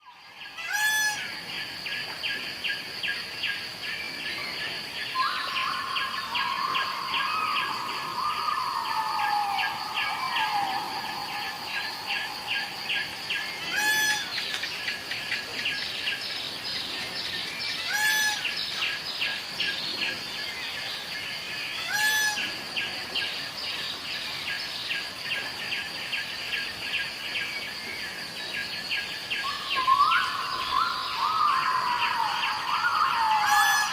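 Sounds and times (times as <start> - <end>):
peacock sharp calls: 0.6 - 1.3, 13.6 - 14.5, 17.8 - 18.5, 21.8 - 22.5, 33.2 - 33.9.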